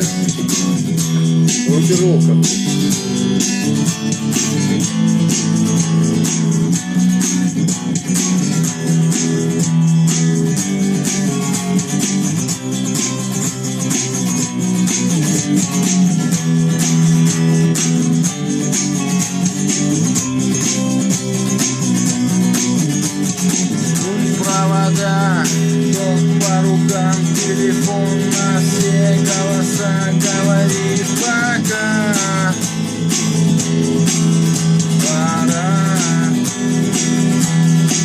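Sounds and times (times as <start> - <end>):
bass guitar: 0.0 - 38.0
strummed electric guitar: 0.0 - 38.0.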